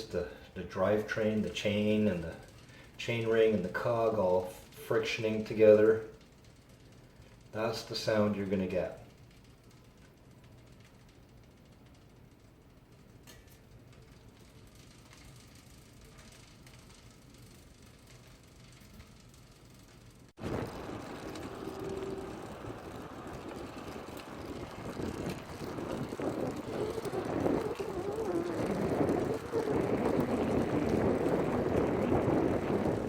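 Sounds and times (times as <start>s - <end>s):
bicycle tyres rolling: 0.0s - 33.0s
faint low hum: 8.8s - 33.0s
wind on microphone: 20.4s - 33.0s.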